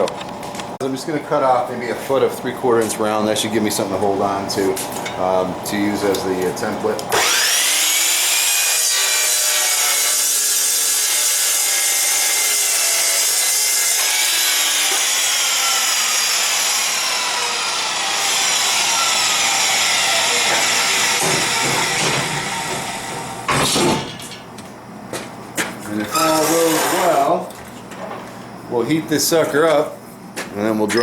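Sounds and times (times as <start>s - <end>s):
power saw grinding steel: 7.1s - 23.5s, 26.1s - 27.4s.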